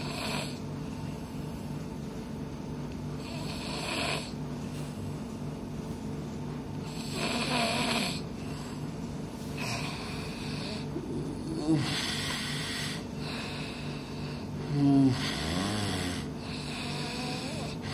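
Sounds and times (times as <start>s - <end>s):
person snoring: 3.2s - 4.4s, 6.9s - 8.2s, 9.6s - 17.9s.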